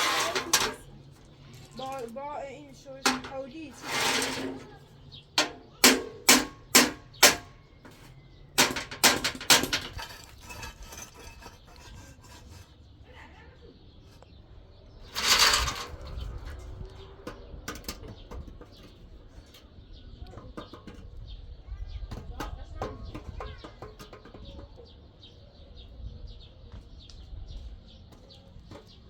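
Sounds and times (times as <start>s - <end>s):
sharp knocks and clatters: 3.0s - 12.7s, 15.2s - 21.3s, 22.1s - 25.0s.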